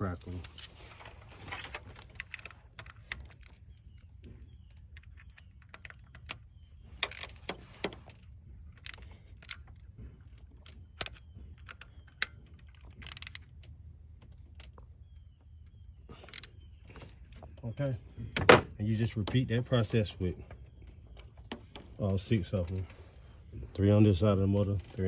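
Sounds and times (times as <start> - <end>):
hand tools clicking on bolts: 8.8 - 13.6.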